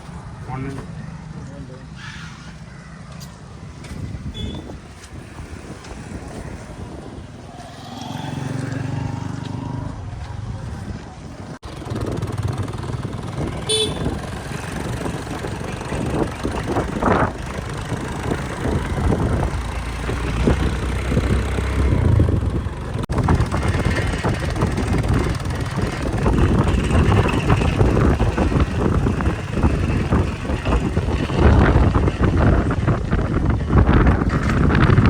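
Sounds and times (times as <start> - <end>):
heavy machinery diesel engine running: 22.0 - 35.0.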